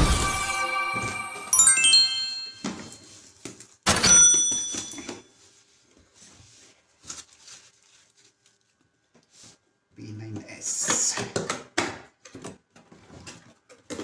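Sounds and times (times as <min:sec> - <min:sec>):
sharp bright ding: 0:00.0 - 0:02.9, 0:03.9 - 0:05.1
ringing chime: 0:00.0 - 0:03.0, 0:03.9 - 0:05.1
clicks and knocks of handling a box: 0:10.3 - 0:14.0.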